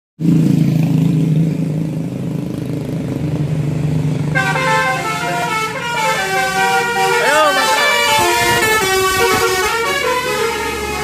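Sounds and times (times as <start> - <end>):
vehicle horn: 4.3 - 11.0.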